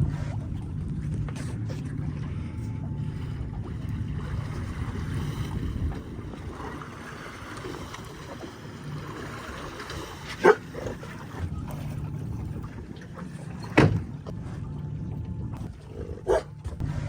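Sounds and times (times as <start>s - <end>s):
boat low rumble: 0.0s - 17.0s
wind noise: 3.1s - 8.2s.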